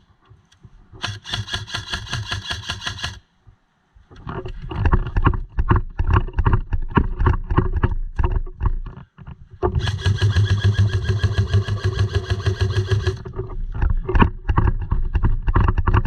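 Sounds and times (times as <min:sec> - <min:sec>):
airsoft gun full-auto burst: 0:01.0 - 0:03.2, 0:09.8 - 0:13.2
knocks and rustling: 0:04.1 - 0:11.8, 0:12.8 - 0:16.0.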